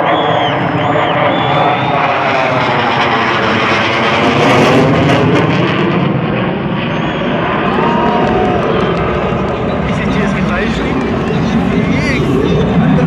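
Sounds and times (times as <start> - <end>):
fighter jet roaring past: 0.0 - 13.0.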